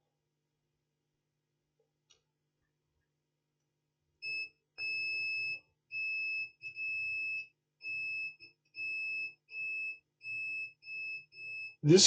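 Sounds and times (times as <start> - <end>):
multimeter continuity beeps: 4.2 - 12.0.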